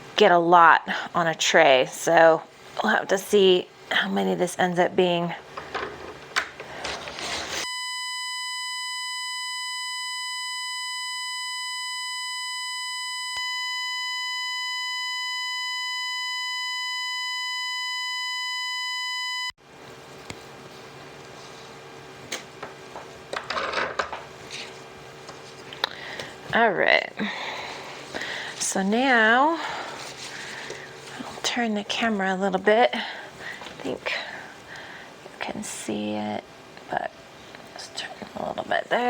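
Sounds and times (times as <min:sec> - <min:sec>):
faint kitchen room sounds: 0:00.0 - 0:07.7, 0:19.6 - 0:39.0
electronic bleep tone: 0:07.6 - 0:19.5.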